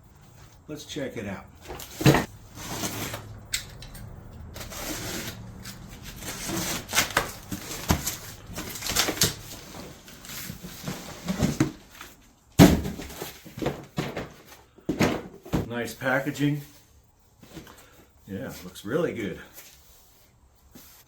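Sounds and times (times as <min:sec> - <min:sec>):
cardboard packaging rustling: 0:01.6 - 0:03.5, 0:04.4 - 0:15.8.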